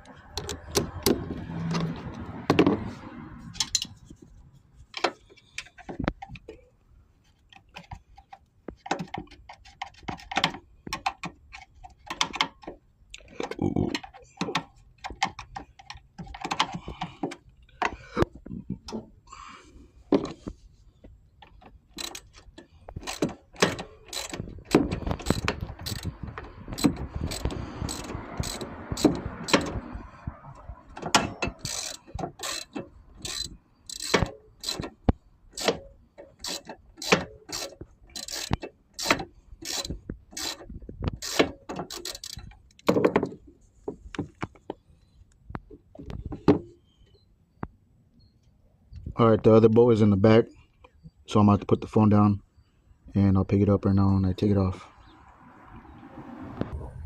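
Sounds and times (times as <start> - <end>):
ratchet wrench clicking: 22.0 - 22.4, 23.0 - 29.9, 31.2 - 40.6, 41.2 - 42.8.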